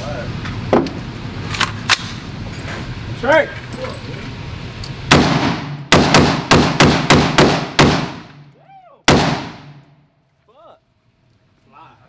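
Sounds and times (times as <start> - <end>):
pistol shots echoing indoors: 5.1 - 8.3.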